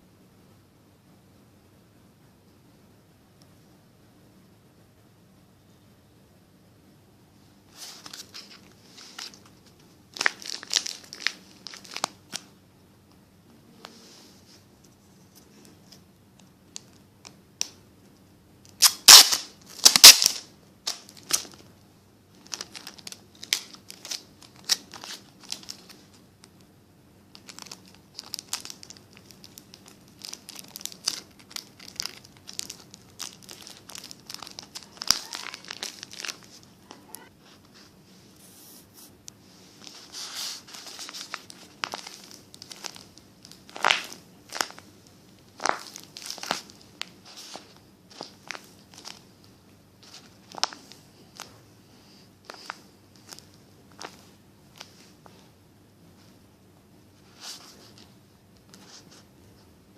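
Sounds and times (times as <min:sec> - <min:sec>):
paper crinkling and rustling: 0:07.7 - 0:12.5, 0:22.4 - 0:26.2, 0:27.3 - 0:36.7, 0:39.7 - 0:44.9, 0:45.5 - 0:49.3, 0:50.0 - 0:51.6, 0:52.4 - 0:55.4.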